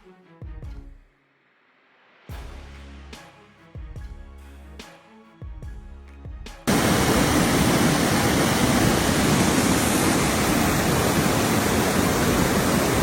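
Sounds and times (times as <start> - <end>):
background music: 0.0 - 7.2
fast-flowing floodwater rushing: 6.7 - 13.0.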